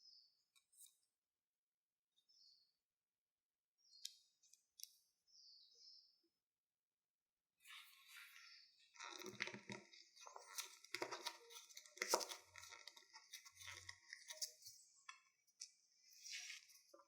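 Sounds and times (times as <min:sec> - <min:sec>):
faint crackling and rustling: 0:07.7 - 0:17.0.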